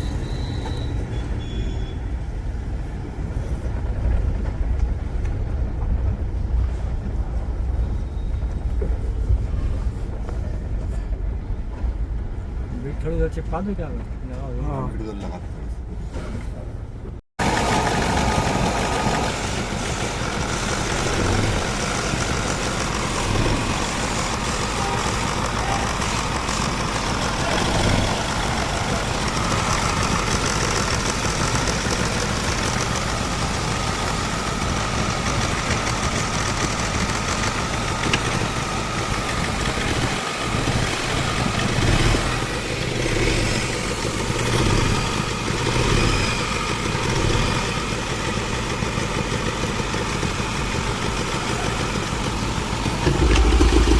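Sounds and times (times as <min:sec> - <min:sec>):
diesel engine idling: 0:17.4 - 0:53.9
engine tapping knock: 0:17.4 - 0:53.9.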